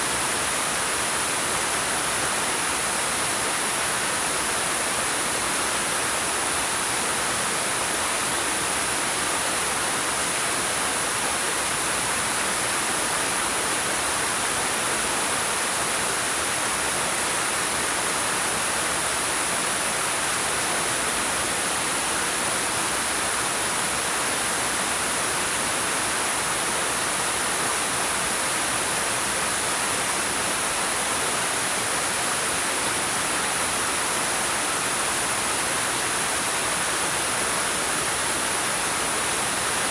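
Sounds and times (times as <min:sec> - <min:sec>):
waterfall pouring over rocks: 0:00.0 - 0:39.9.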